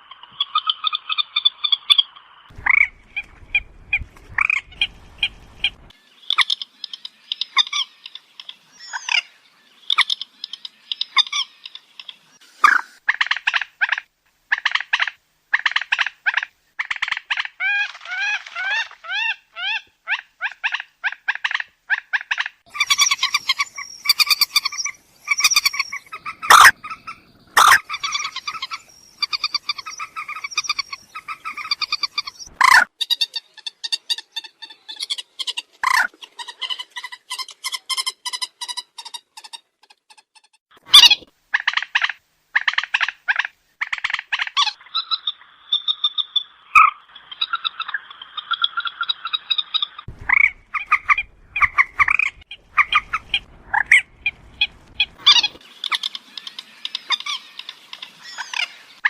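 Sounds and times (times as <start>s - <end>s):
moorhen calls: 22.2s - 38.8s, 40.9s - 59.0s.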